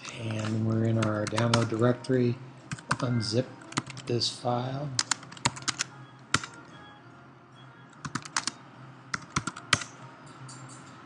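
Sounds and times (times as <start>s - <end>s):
keyboard typing: 0.0s - 1.8s, 2.7s - 4.1s, 5.0s - 6.6s, 7.9s - 10.0s.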